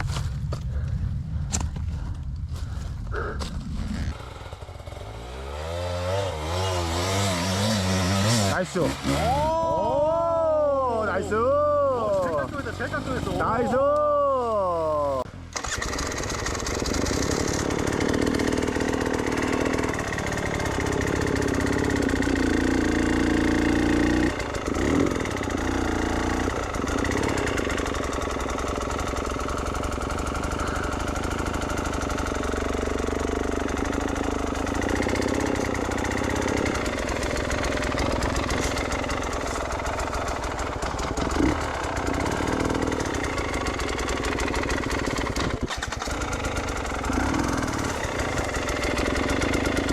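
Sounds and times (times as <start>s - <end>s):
dirt bike engine revving: 3.2s - 49.9s.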